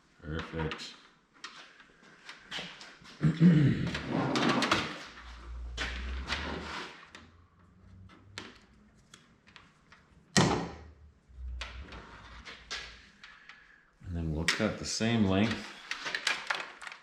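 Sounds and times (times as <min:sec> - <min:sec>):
wire and tools rustling: 0:15.3 - 0:17.0.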